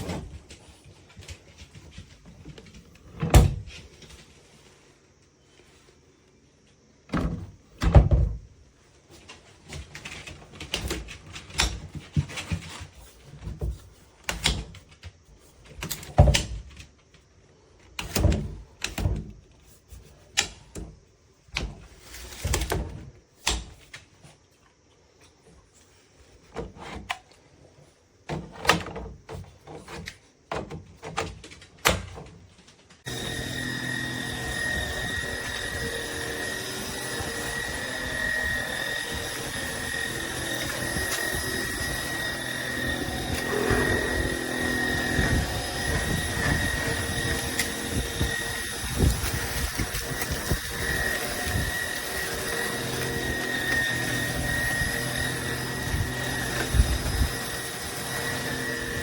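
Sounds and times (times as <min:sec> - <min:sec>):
vacuum motor whining: 0:33.1 - 0:59.0.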